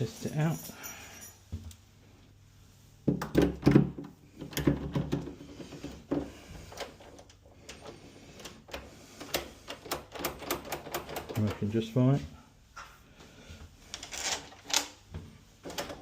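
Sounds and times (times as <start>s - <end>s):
lock mechanism clicks and knocks: 3.1s - 11.6s.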